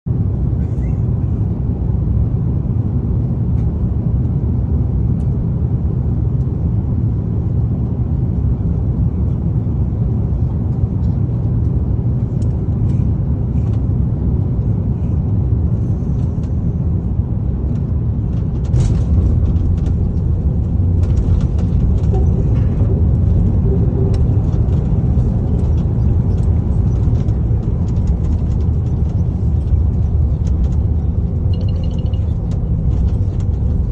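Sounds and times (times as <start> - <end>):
deep rumble of landing aircraft: 0.0 - 33.9
light rattles: 18.3 - 33.9.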